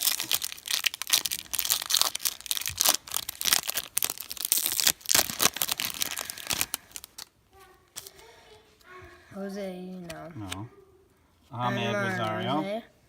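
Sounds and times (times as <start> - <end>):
card pack wrapper tearing and crinkling: 0.0 - 7.3.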